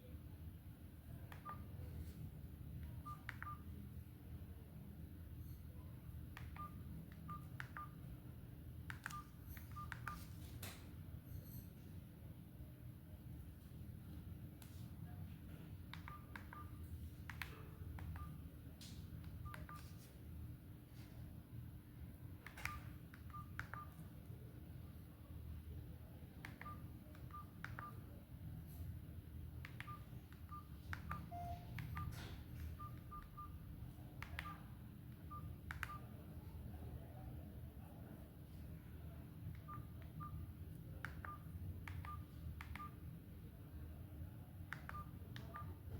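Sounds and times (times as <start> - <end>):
low background hum: 0.0 - 45.9
phone key beeps: 1.3 - 1.8, 2.8 - 3.8, 6.4 - 8.0, 8.9 - 10.3, 16.0 - 16.8, 17.4 - 18.4, 19.4 - 20.0, 22.5 - 24.1, 26.5 - 28.1, 29.6 - 33.6, 34.2 - 36.1, 39.6 - 40.4, 41.0 - 43.0, 44.7 - 45.8.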